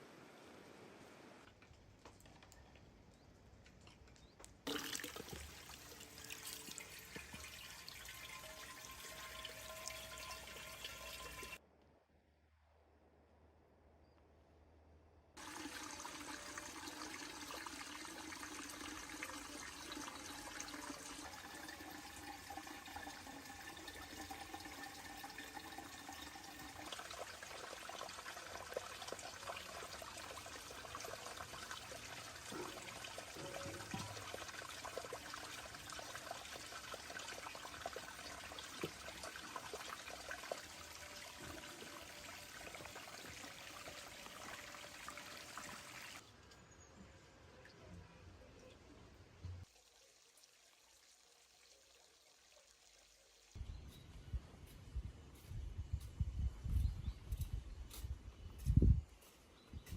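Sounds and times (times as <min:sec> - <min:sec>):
running water rushing: 0:15.4 - 0:46.2.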